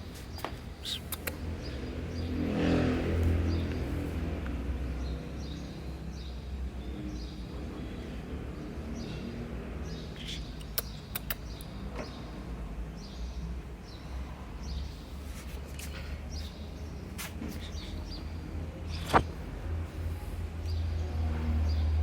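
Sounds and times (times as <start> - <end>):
high bird chirps: 0.3 - 1.9
sharp clicks: 0.8 - 1.4, 10.6 - 11.7.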